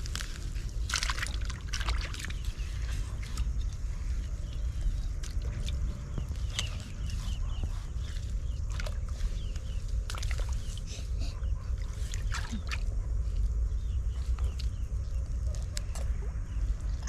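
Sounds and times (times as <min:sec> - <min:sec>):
water sloshing and splashing: 0:00.0 - 0:10.8, 0:11.8 - 0:13.0
steady low rumble: 0:00.0 - 0:17.0.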